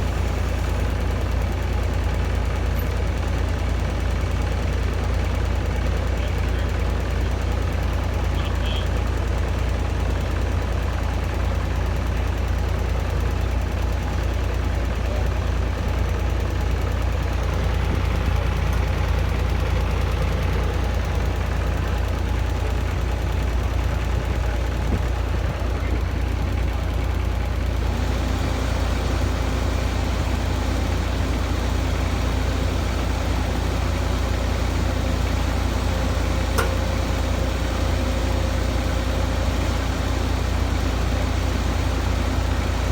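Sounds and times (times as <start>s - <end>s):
excavator diesel engine rumble: 0.0s - 42.9s
steady engine tone: 24.2s - 42.9s
sharp click: 36.6s - 36.9s.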